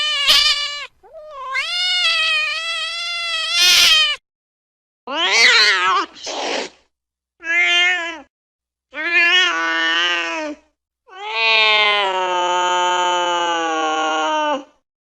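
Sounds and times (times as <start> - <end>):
cat meowing: 0.0 - 4.2, 5.1 - 6.2, 7.4 - 8.3, 11.1 - 12.4.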